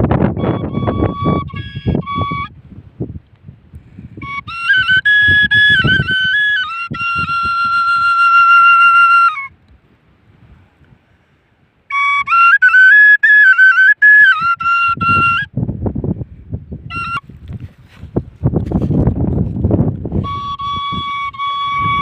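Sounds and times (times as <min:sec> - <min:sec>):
flute melody: 0:00.0 - 0:02.6, 0:04.1 - 0:09.6, 0:11.9 - 0:15.6, 0:16.8 - 0:18.0, 0:20.0 - 0:22.0.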